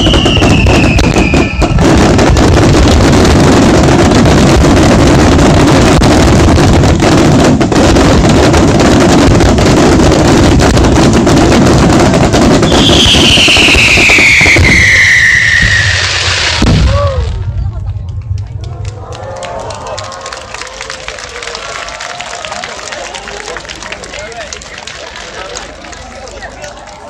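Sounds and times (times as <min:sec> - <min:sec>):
fireworks bursting: 0:00.0 - 0:19.1
falling high whistle: 0:12.7 - 0:16.3.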